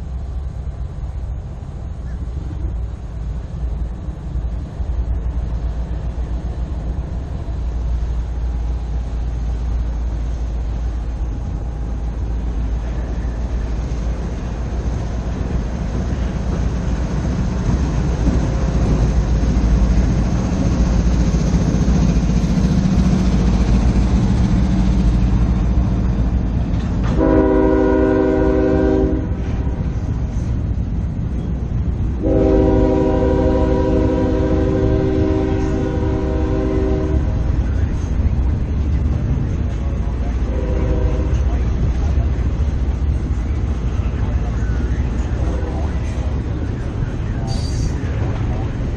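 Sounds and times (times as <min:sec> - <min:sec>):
diesel locomotive rumble: 0:00.0 - 0:48.9
locomotive air horn blasts: 0:27.1 - 0:29.8, 0:32.2 - 0:37.5, 0:40.5 - 0:41.5.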